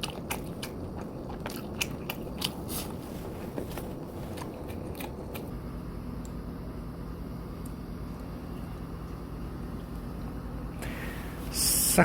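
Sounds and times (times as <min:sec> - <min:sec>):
person chewing: 0:00.0 - 0:05.6.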